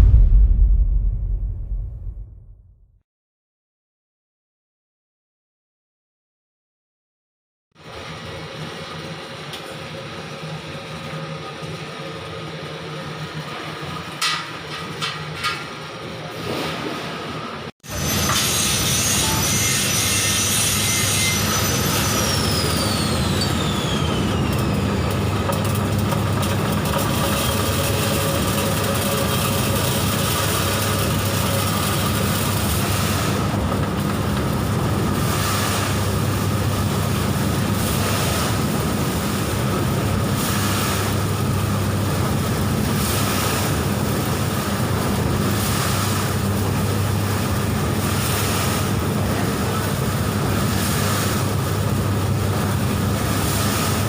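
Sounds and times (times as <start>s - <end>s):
high whine falling in pitch: 0.0s - 2.8s
low hum: 0.0s - 2.9s
blower and motor rush: 21.5s - 54.0s.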